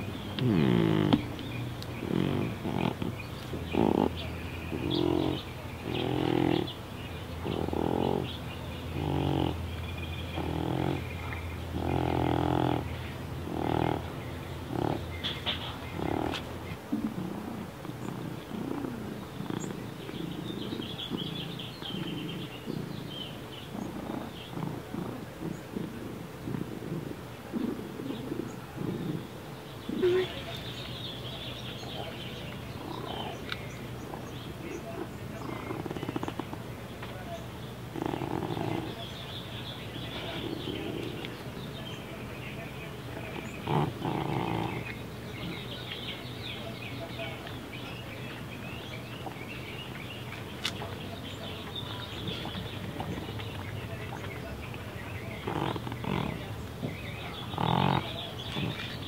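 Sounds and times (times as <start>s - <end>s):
cat snorting and snoring: 0.0s - 1.4s, 2.0s - 6.7s, 7.4s - 8.3s, 8.9s - 9.6s, 10.4s - 11.1s, 11.8s - 14.1s, 14.7s - 23.1s, 23.7s - 29.3s, 32.8s - 33.4s, 35.4s - 36.6s, 37.9s - 38.9s, 40.2s - 41.3s, 43.3s - 45.0s, 55.4s - 56.4s, 57.4s - 58.9s
cat snoring: 0.4s - 1.3s, 8.9s - 9.6s, 17.2s - 19.6s, 43.6s - 44.8s, 57.6s - 58.0s.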